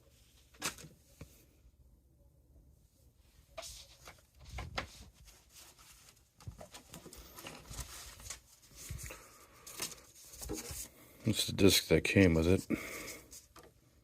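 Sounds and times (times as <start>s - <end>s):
rustling: 3.6s - 11.1s.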